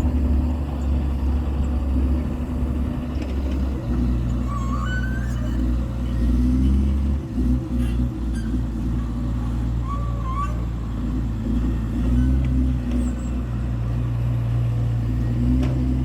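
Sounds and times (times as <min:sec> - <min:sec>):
diesel engine rumbling: 0:00.0 - 0:16.0.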